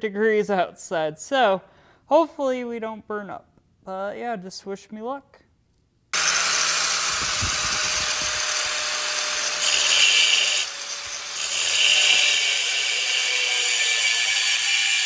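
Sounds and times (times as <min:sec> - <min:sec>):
power tool grinding: 0:06.2 - 0:15.0.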